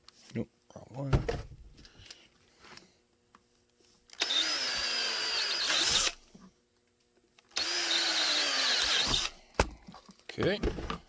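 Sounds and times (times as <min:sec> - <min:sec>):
electric drill whining: 0:04.2 - 0:06.2, 0:07.5 - 0:09.4.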